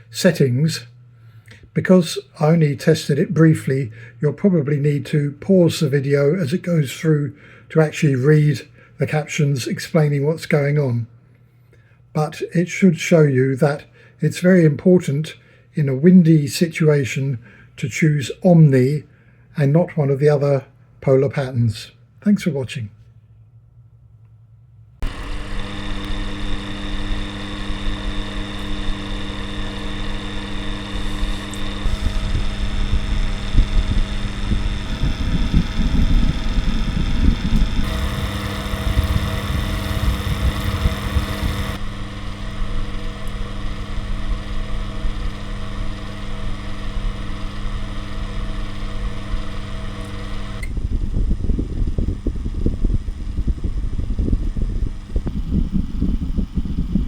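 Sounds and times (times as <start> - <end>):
electric fan motor hum: 25.0 - 57.0
wind buffeting microphone: 31.9 - 41.7, 50.7 - 57.0.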